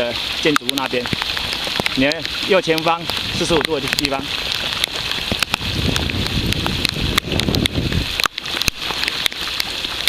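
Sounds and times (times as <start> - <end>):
rain falling on the sea: 0.0 - 10.0
wind buffeting microphone: 1.0 - 8.7.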